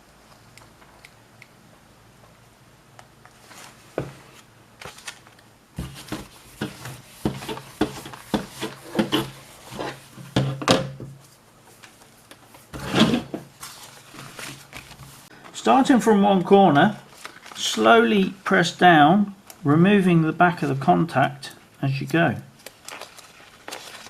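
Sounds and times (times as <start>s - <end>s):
plastic film rustling and rubbing: 3.3s - 10.4s, 11.2s - 18.3s, 22.6s - 24.0s.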